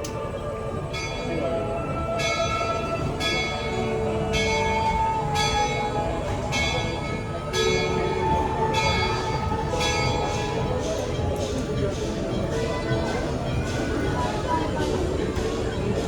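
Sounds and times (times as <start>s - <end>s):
steady low background din: 0.0s - 16.0s
bell ringing: 2.1s - 12.1s.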